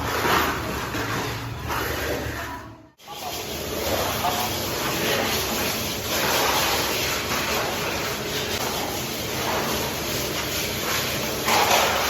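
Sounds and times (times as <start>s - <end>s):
trowel scraping plaster on wall: 3.0s - 12.0s.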